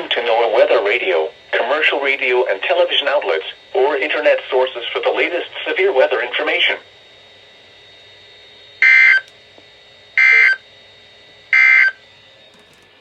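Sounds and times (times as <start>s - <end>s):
faint radio hiss: 0.0s - 6.8s
warbling data tone bursts: 8.8s - 9.3s, 10.2s - 10.6s, 11.5s - 12.0s.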